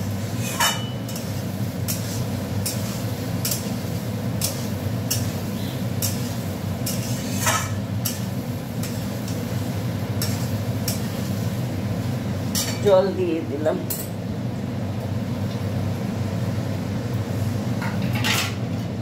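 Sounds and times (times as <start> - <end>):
spatula scraping metal pan: 6.8 - 8.2.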